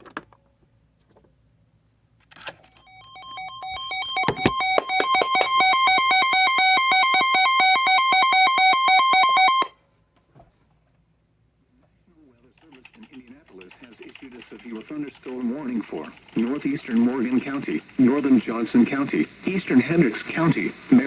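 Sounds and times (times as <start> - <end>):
pulsing two-pitch electronic alarm: 2.8 - 9.7.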